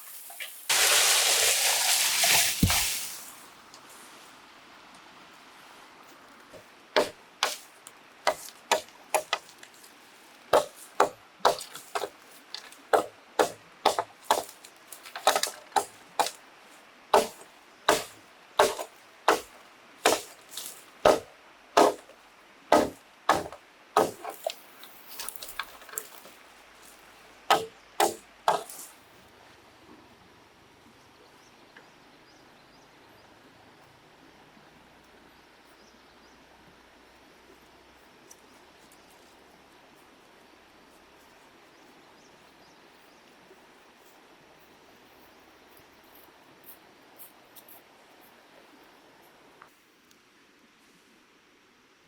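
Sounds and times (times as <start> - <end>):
blade chopping bamboo: 7.0 - 7.7, 8.3 - 9.5, 10.5 - 16.4, 17.2 - 22.1, 22.7 - 24.6, 27.5 - 28.9.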